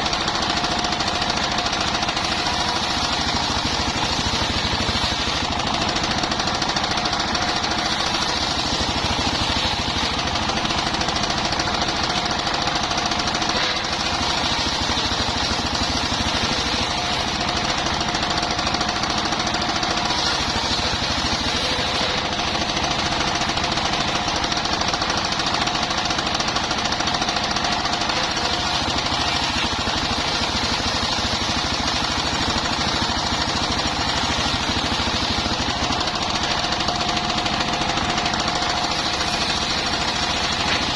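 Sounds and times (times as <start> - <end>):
sawmill engine chugging: 0.0 - 40.9.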